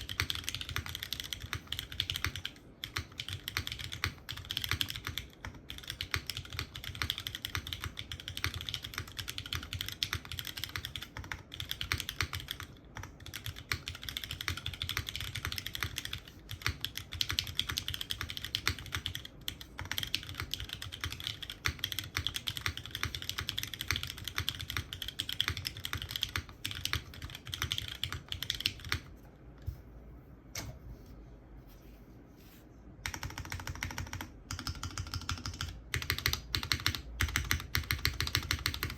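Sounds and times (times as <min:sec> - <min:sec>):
mechanical keyboard typing: 0:00.0 - 0:29.1, 0:33.0 - 0:38.9.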